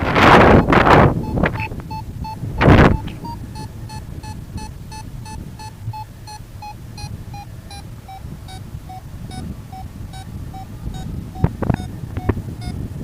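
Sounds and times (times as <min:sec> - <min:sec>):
low wind rumble: 0:00.0 - 0:13.0
variometer short beeps: 0:00.1 - 0:13.0.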